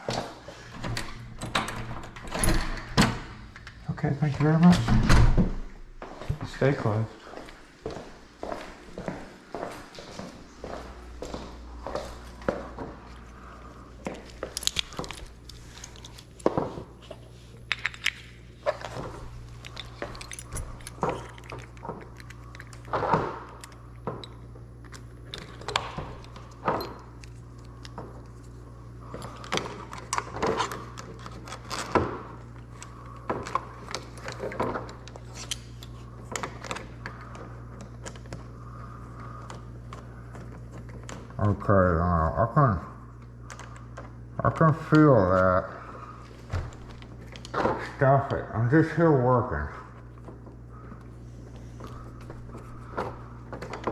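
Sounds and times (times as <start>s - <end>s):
steady low hum: 0.0s - 53.9s
keys jangling: 19.5s - 22.9s
metal lock parts clicking: 19.6s - 27.9s.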